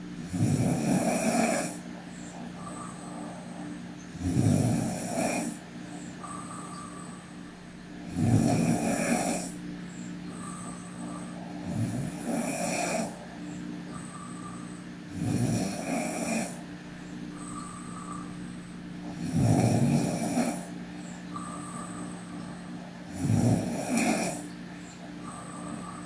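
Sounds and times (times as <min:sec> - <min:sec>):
girl snoring: 0:00.2 - 0:01.8, 0:04.2 - 0:05.6, 0:08.0 - 0:09.6, 0:11.6 - 0:13.2, 0:15.1 - 0:16.6, 0:17.4 - 0:20.8, 0:23.1 - 0:24.5.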